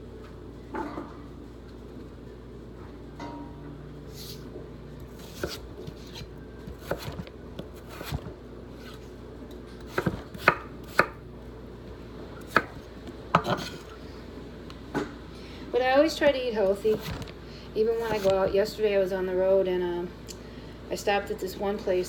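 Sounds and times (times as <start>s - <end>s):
knife chopping on cutting board: 5.2s - 8.3s, 9.9s - 11.2s, 12.5s - 13.9s.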